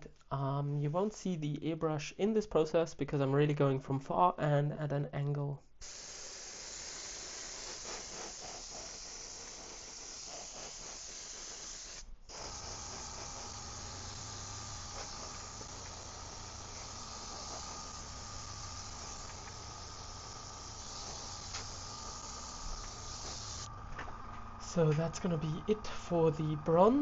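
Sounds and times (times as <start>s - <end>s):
airbrush spraying hiss: 5.8s - 27.0s
low hum: 12.4s - 27.0s.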